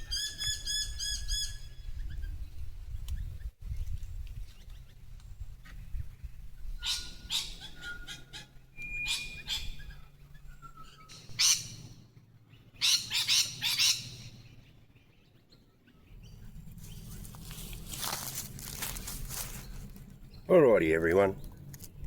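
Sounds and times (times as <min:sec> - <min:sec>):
flock of birds screeching: 0:06.8 - 0:12.0, 0:12.8 - 0:14.4
short whistled bird notes: 0:08.8 - 0:11.6.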